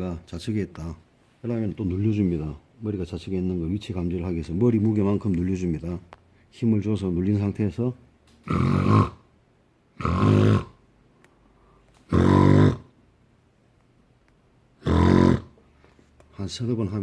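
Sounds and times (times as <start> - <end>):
man imitating snoring: 8.4 - 9.2, 10.0 - 10.8, 12.1 - 12.9, 14.8 - 15.6.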